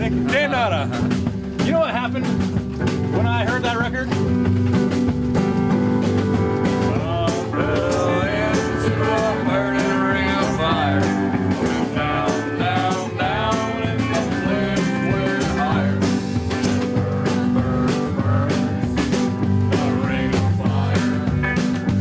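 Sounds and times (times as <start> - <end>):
rock song with guitar: 0.0 - 22.0
steady drum beat: 0.0 - 22.0.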